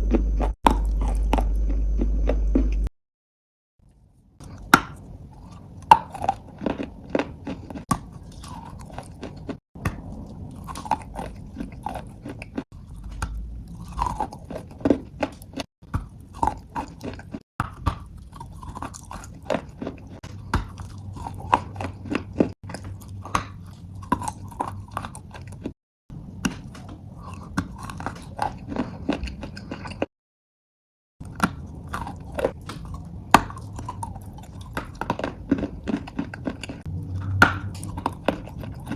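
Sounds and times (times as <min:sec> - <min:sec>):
chewing crunchy lumps: 0:00.0 - 0:02.9, 0:04.4 - 0:25.8, 0:26.4 - 0:30.1, 0:31.2 - 0:38.9.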